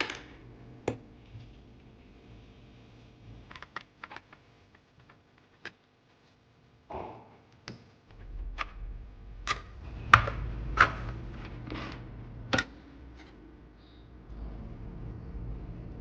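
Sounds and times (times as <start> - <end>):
low handling rumble: 8.1 - 16.0.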